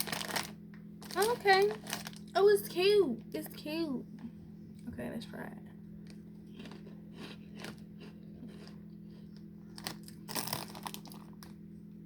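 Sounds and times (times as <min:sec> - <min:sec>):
steady low hum: 0:00.0 - 0:12.0
person chewing crunchy snack: 0:06.4 - 0:11.4.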